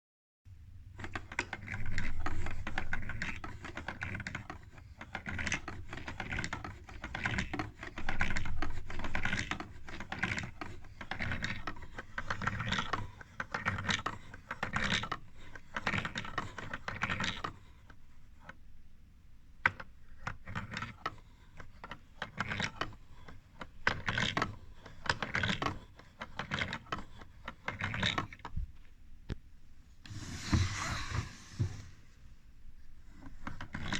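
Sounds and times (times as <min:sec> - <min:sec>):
wooden gears clicking and clattering: 0:01.0 - 0:17.6, 0:19.7 - 0:28.6, 0:33.2 - 0:33.9.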